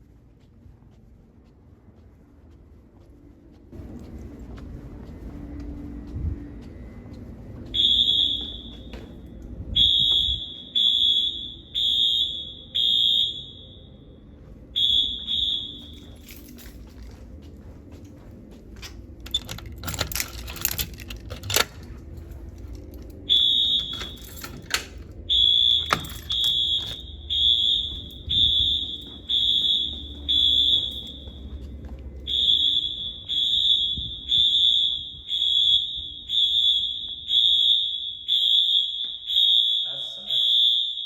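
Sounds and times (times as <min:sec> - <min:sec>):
fire alarm horns pulsing: 0:07.6 - 0:41.0
clicking and rattling: 0:15.9 - 0:27.0.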